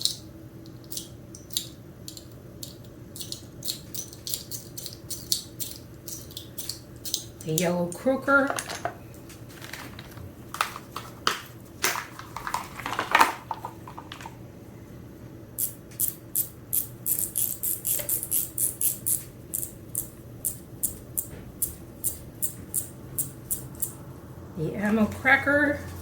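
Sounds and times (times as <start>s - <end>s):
fidget toy clicking: 15.6s - 24.0s.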